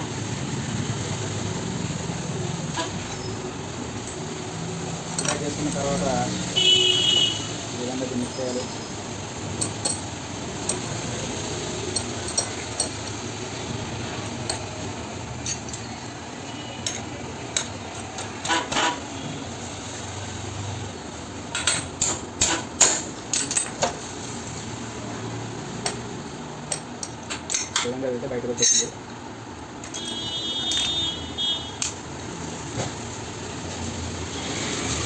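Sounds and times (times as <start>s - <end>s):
steel tools clinking on metal: 5.1s - 5.6s, 9.5s - 13.2s, 15.4s - 15.9s, 16.8s - 18.9s, 21.5s - 23.9s, 26.7s - 27.9s, 28.6s - 29.0s.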